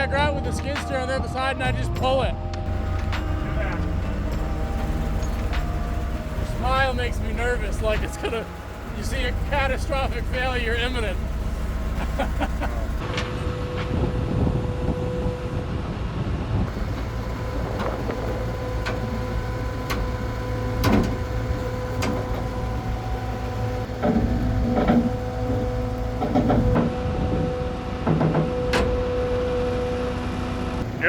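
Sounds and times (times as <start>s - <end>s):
constant whine: 0.0s - 31.0s
machine engine running under load: 2.6s - 31.0s
loud short engine bursts: 2.7s - 15.7s.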